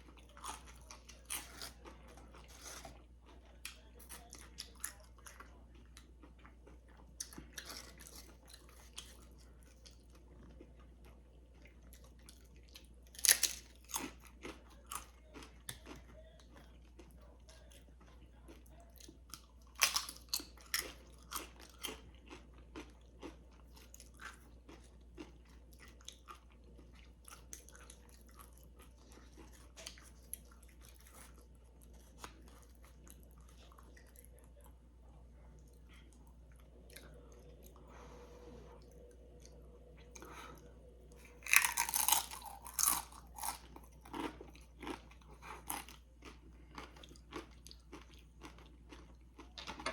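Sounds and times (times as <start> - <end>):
chewing: 0.0 - 49.9
crunching tortilla chips: 12.0 - 34.4, 41.3 - 49.9.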